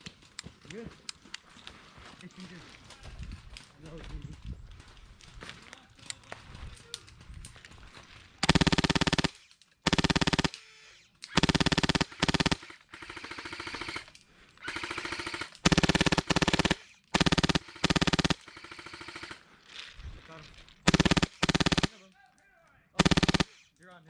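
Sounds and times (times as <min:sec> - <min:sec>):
airsoft guns firing bursts: 0:08.4 - 0:19.4, 0:20.8 - 0:22.1, 0:23.0 - 0:23.8.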